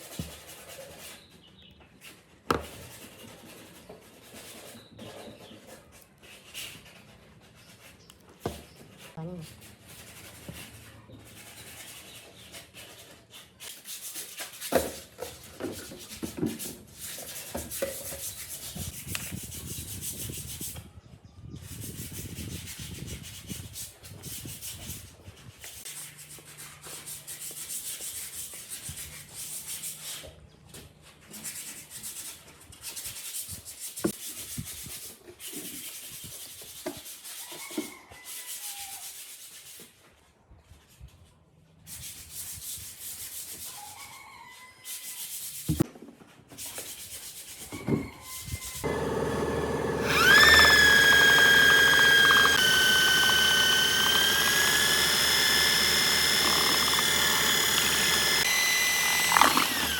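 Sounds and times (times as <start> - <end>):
sandpaper rubbing on wood: 9.5 - 14.8, 16.0 - 20.8, 21.6 - 30.2, 31.3 - 37.5, 38.3 - 40.0, 41.9 - 43.7, 46.6 - 47.7.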